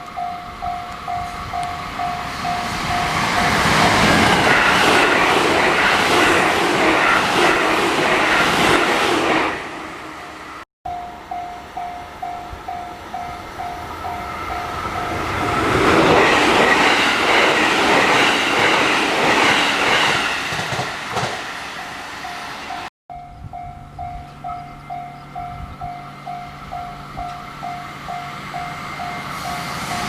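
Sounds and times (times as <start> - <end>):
level-crossing warning bell ringing: 0.0 - 4.2, 10.9 - 17.4, 21.8 - 30.0
train passing: 0.0 - 30.0.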